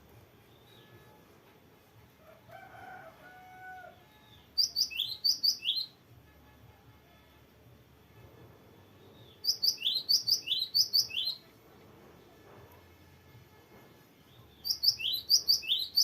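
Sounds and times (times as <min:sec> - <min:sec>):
faint rooster crowing: 0:02.2 - 0:04.4
bird whistled notes: 0:04.6 - 0:06.0, 0:09.4 - 0:11.5, 0:14.6 - 0:16.0.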